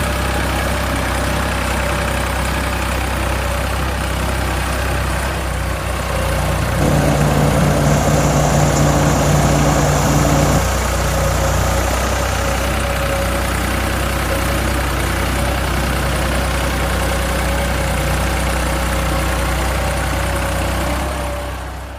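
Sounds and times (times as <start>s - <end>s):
heavy machine engine idling: 0.8s - 21.9s
second louder engine note: 6.5s - 11.4s.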